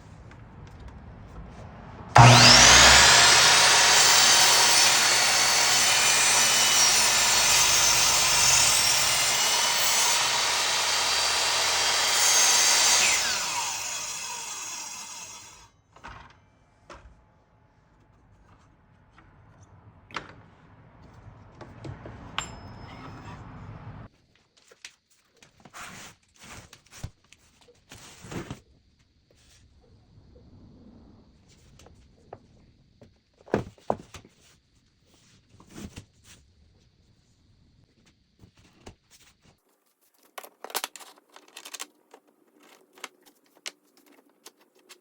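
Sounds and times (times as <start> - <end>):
power saw cutting wood: 2.2 - 15.7.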